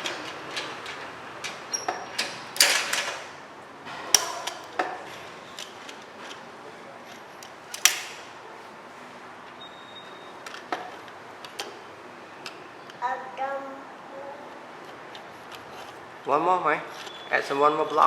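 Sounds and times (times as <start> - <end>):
hard toys clicking and clacking: 0.0 - 3.3, 4.1 - 6.4.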